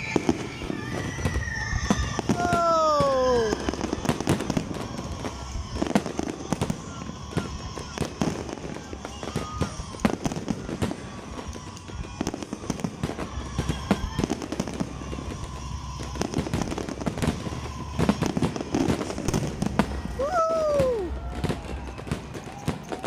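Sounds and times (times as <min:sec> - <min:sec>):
fireworks bangs and crackling: 0:00.0 - 0:23.0.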